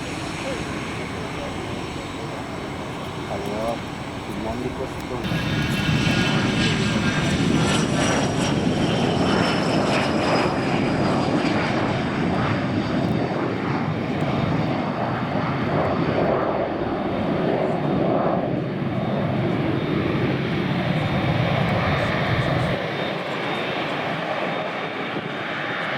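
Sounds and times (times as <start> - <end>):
jet engine roar: 0.0 - 25.9.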